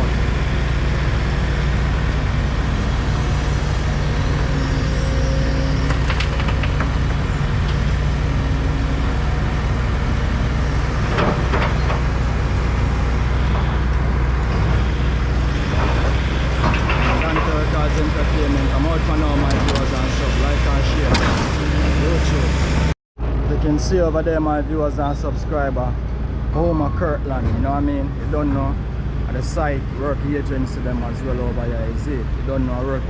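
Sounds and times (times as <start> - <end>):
diesel engines humming: 0.0 - 33.0
knocks and clanks: 5.8 - 8.5, 10.9 - 12.3, 14.4 - 18.4, 19.2 - 20.2, 20.9 - 21.9.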